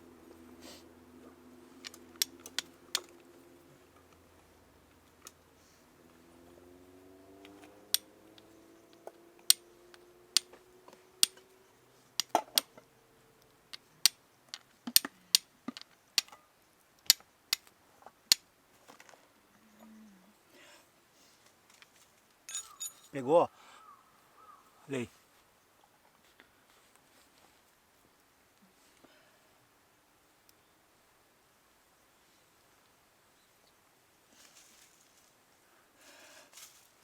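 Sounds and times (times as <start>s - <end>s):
faint low hum with rising tones: 0.0s - 13.7s.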